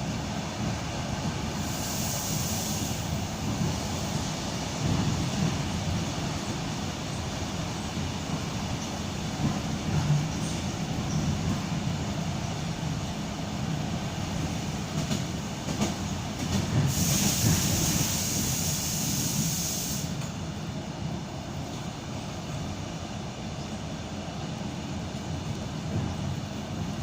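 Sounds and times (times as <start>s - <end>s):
train wheels rumbling on rails: 0.0s - 27.0s
loud hiss: 1.5s - 6.4s, 16.8s - 20.4s
train clicks: 1.7s - 12.3s, 13.8s - 20.4s.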